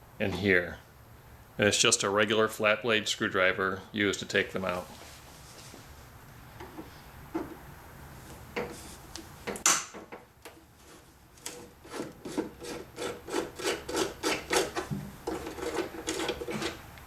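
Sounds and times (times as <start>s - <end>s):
screw grating as turned: 10.8s - 16.9s.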